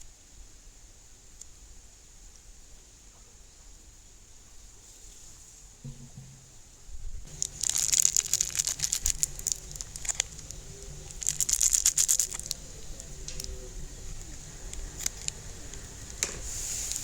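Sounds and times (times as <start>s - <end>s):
crinkling handling noise: 7.2s - 17.0s.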